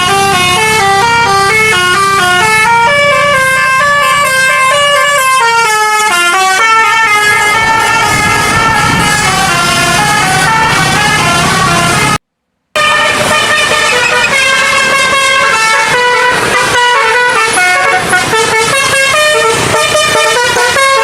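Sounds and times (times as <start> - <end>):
bus engine running: 0.0 - 12.2, 12.8 - 21.0
multi-tone bus air horn melody: 0.0 - 12.2, 12.8 - 21.0.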